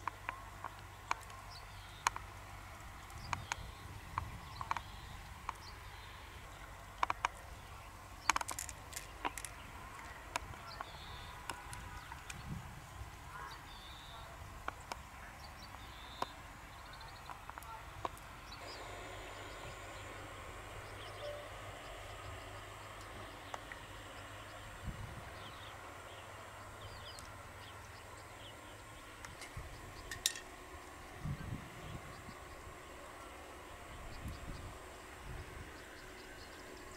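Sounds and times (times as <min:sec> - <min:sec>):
low steady rumble: 0:00.0 - 0:36.9
steady background hiss: 0:00.0 - 0:36.9
hard objects clicking: 0:08.2 - 0:12.4, 0:29.2 - 0:30.5
faint bird chirps: 0:13.3 - 0:14.4, 0:15.3 - 0:17.8, 0:20.8 - 0:24.6.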